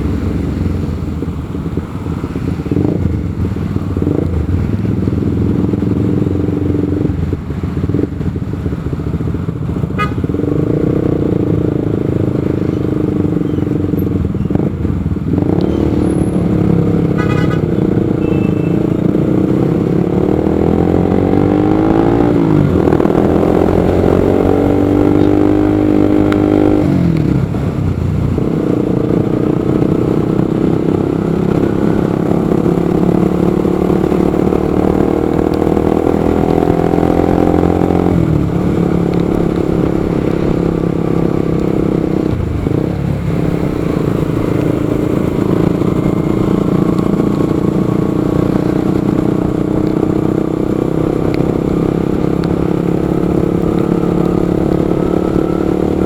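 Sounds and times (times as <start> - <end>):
motorcycle engine running: 0.0 - 56.0
road and traffic noise: 0.0 - 56.0
horn toot: 17.0 - 18.8.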